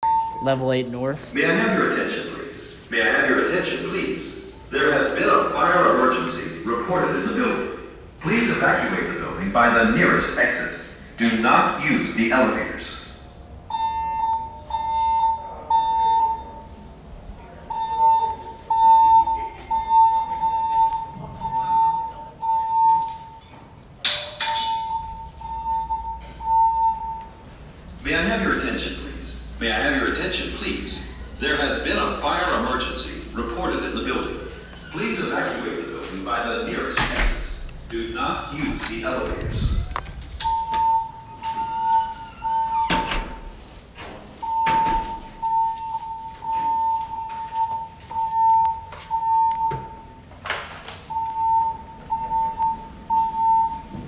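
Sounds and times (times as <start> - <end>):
pulsing fire alarm tone: 0.0 - 0.9, 13.6 - 16.8, 17.7 - 23.6, 24.5 - 27.6, 37.2 - 43.6, 44.4 - 50.3, 51.1 - 54.0.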